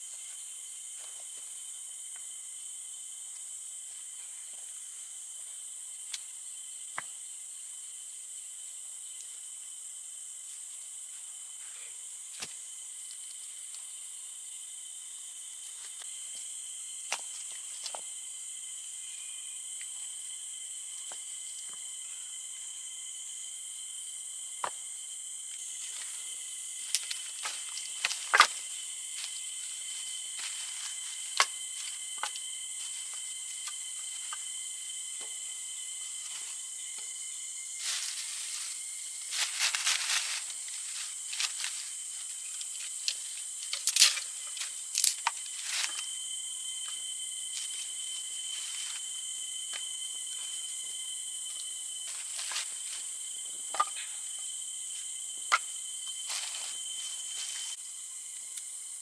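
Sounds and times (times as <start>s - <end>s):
insect chorus buzzing: 0.0s - 59.0s
rustling or crackling: 37.8s - 46.0s.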